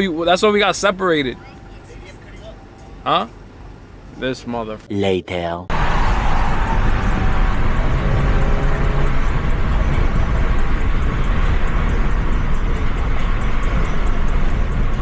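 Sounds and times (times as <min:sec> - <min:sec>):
deep engine rumble: 0:00.0 - 0:04.9, 0:05.7 - 0:15.0
road and wind noise: 0:00.0 - 0:04.9, 0:05.7 - 0:15.0.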